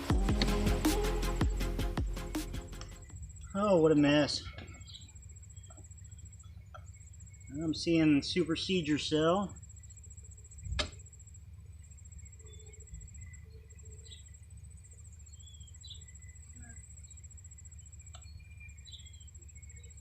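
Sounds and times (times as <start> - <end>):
high insect trill: 0.0 - 20.0.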